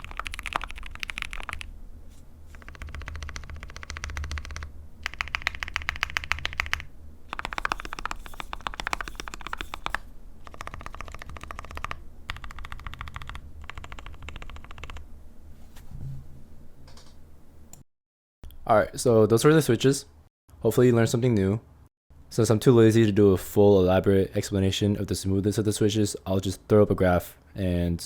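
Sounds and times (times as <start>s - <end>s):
fast typing on mechanical keyboard: 0.0s - 1.7s, 2.5s - 15.0s.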